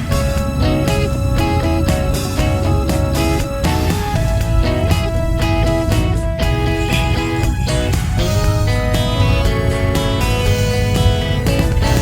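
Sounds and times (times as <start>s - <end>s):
guitar music with beat and bass: 0.0s - 12.0s.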